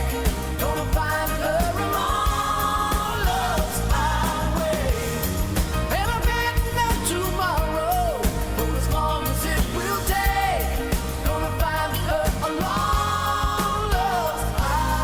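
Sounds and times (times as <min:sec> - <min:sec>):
pop-rock music: 0:00.0 - 0:15.0.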